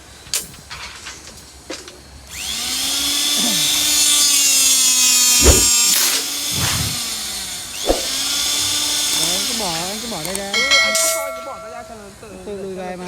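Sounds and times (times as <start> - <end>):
electric motor whining: 2.3 - 11.9
small thump: 5.4 - 5.9, 7.8 - 8.2
loud clunk: 5.4 - 6.0.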